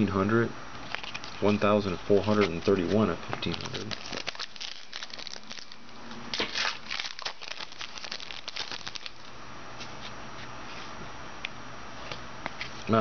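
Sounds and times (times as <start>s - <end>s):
card pack wrapper crinkling: 0.8s - 9.3s.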